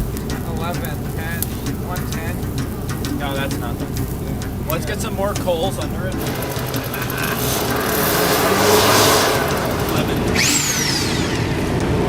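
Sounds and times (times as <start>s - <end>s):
motors running: 6.2s - 12.0s
sharp whine falling in pitch: 10.4s - 11.8s.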